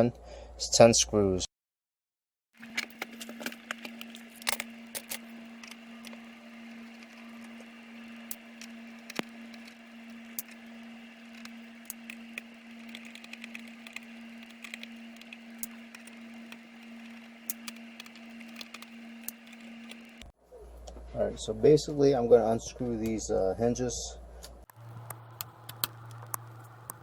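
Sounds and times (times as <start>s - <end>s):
steady low hum: 2.6s - 27.0s
screwdriver clicking on screws: 11.3s - 20.2s.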